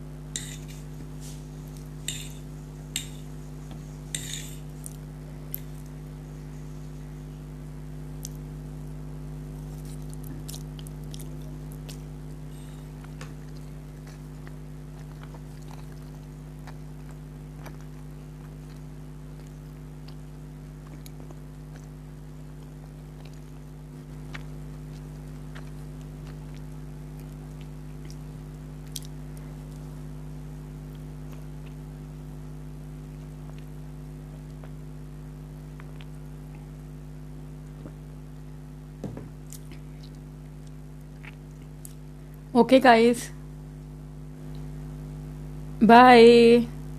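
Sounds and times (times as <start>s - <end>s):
steady low hum: 0.0s - 46.9s
chewing noodles: 9.6s - 29.9s, 39.5s - 42.0s.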